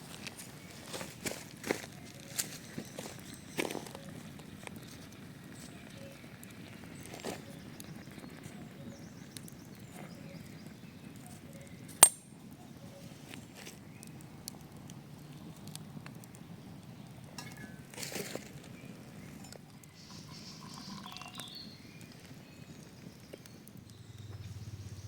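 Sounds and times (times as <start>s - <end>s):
low outdoor background: 0.0s - 25.0s.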